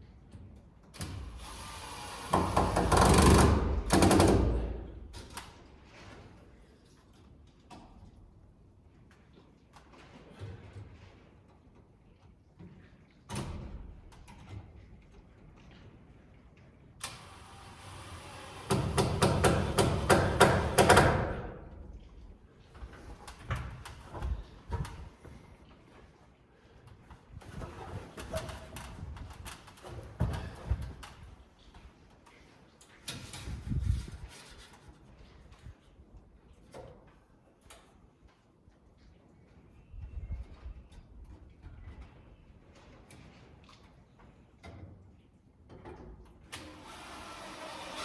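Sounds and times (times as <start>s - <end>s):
hammer striking wood: 19.0s - 21.1s.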